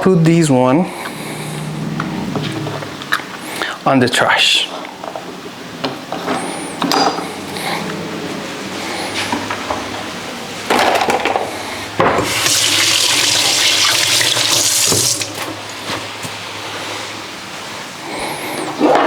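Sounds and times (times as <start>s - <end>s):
kitchen tap running: 12.1s - 15.7s.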